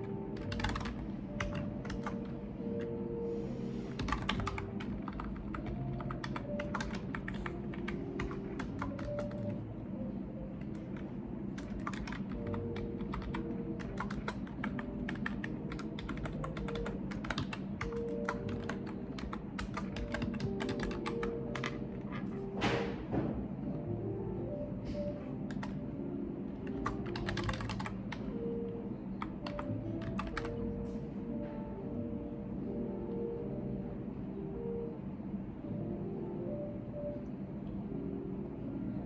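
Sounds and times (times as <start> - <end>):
keyboard typing: 0.0 - 3.0, 3.9 - 9.6, 10.4 - 22.9, 24.9 - 25.9, 26.6 - 30.9.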